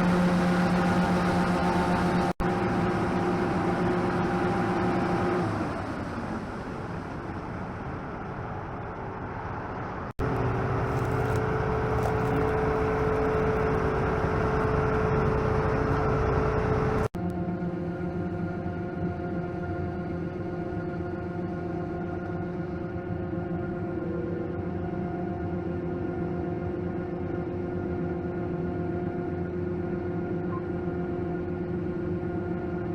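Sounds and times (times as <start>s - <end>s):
diesel engine humming: 6.8s - 17.1s.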